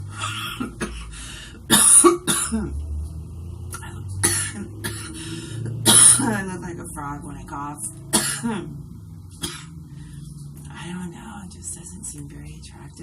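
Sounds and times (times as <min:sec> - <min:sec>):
woman coughing: 0:00.2 - 0:01.1, 0:01.7 - 0:02.8, 0:04.2 - 0:06.5, 0:08.1 - 0:08.8, 0:09.4 - 0:09.8.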